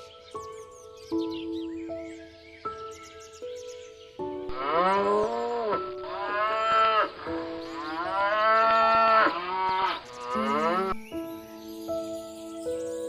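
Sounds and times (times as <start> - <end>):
background music: 0.0 - 13.0
cow mooing: 4.5 - 11.0.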